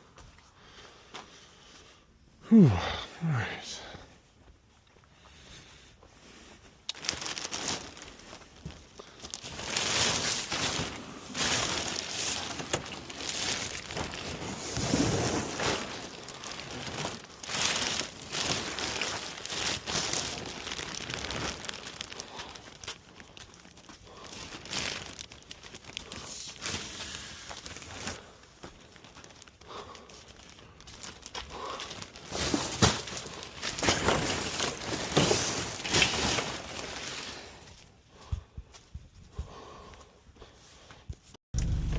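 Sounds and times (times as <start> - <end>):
garbage crinkling and rustling: 6.2 - 38.0.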